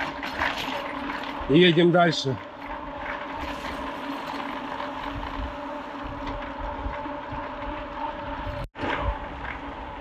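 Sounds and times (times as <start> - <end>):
bike tyres and drivetrain hum: 0.0 - 10.0
wind buffeting microphone: 4.9 - 10.0.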